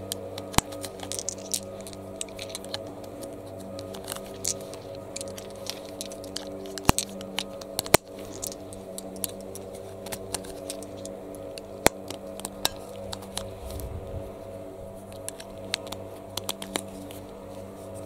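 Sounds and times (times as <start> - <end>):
steady low hum: 0.0 - 18.0
cartridges clicking into magazine: 3.7 - 13.5.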